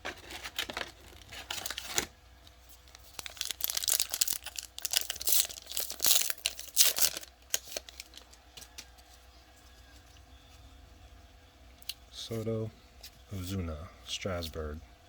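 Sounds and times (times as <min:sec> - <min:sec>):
wrapper tearing and crinkling: 0:00.0 - 0:08.8.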